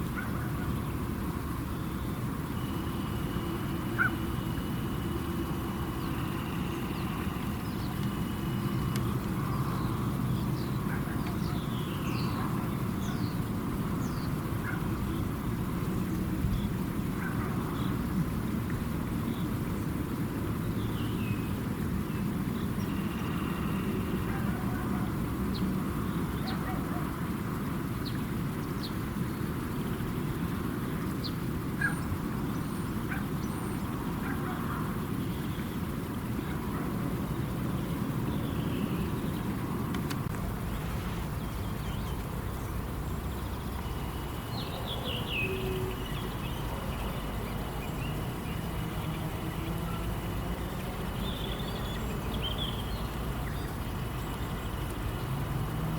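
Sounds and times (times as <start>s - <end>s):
birds calling and chirping: 0.0s - 18.2s, 30.8s - 55.9s
steady low rumble: 21.4s - 55.9s.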